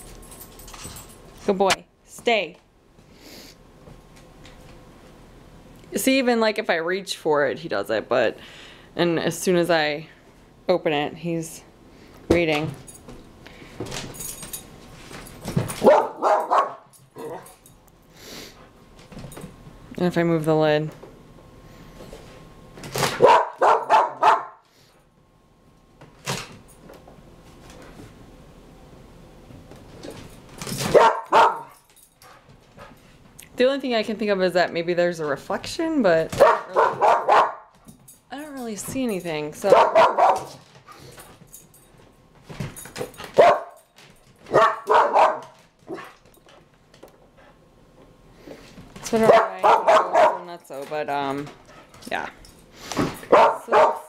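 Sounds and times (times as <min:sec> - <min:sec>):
dog barking: 0:15.8 - 0:17.4, 0:23.2 - 0:24.6, 0:30.9 - 0:31.7, 0:36.4 - 0:37.7, 0:39.7 - 0:40.5, 0:43.4 - 0:43.8, 0:44.5 - 0:46.1, 0:49.2 - 0:50.5, 0:53.3 - 0:54.0.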